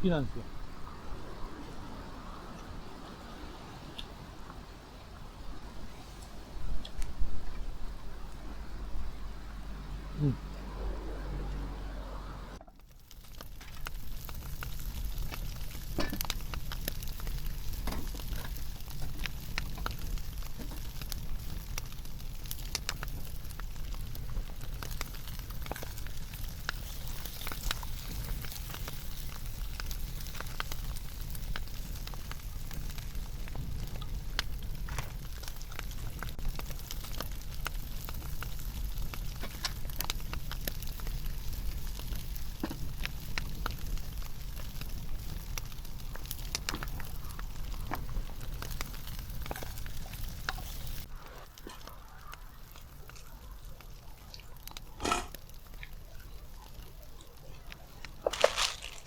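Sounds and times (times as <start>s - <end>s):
campfire crackles and pops: 6.4s - 59.0s
food sizzling in a pan: 48.6s - 51.2s.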